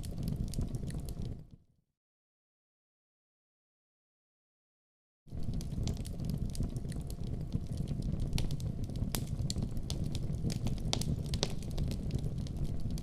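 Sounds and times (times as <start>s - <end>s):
campfire crackling and popping: 0.0s - 1.4s, 5.3s - 13.0s.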